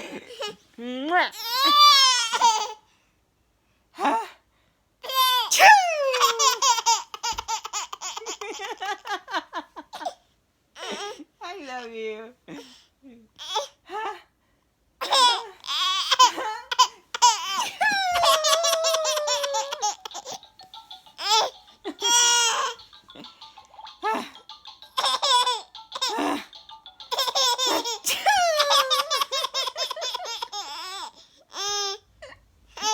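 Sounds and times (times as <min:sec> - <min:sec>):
baby laughing: 0:01.4 - 0:02.8, 0:05.1 - 0:10.2, 0:15.0 - 0:32.0.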